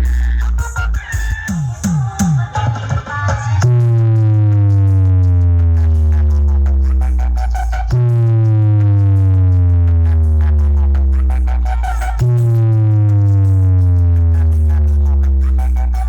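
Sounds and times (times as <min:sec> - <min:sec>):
electronic dance music: 0:00.0 - 0:16.0
deep bass tone sliding down: 0:03.6 - 0:16.0.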